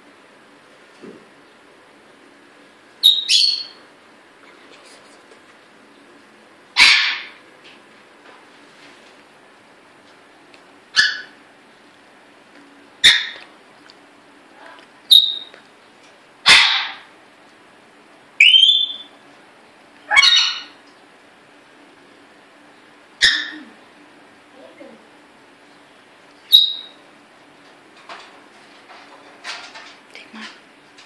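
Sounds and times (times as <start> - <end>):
parrot calls and whistle: 3.0 - 3.8, 6.8 - 7.4, 11.0 - 11.4, 15.1 - 15.5, 18.4 - 19.1, 20.1 - 20.8, 23.2 - 23.6, 26.5 - 27.0.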